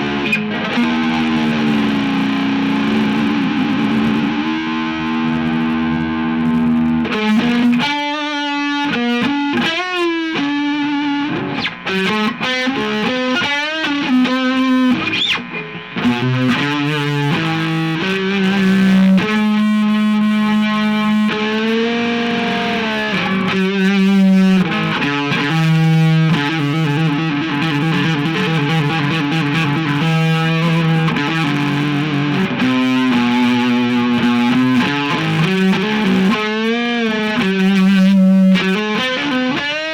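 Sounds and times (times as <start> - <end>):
distorted electric guitar lead: 0.0 - 39.9.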